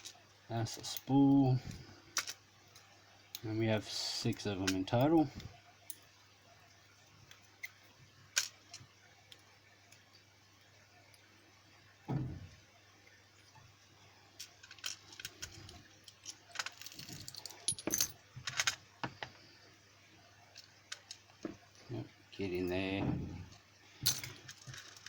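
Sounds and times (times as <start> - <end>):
dull knock: 12.1 - 12.5
metal lock parts clicking and rattling: 14.4 - 18.9.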